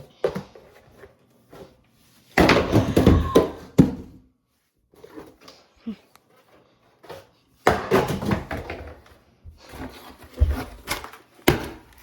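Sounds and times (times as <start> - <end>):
hard objects clattering and knocking: 2.4 - 4.2.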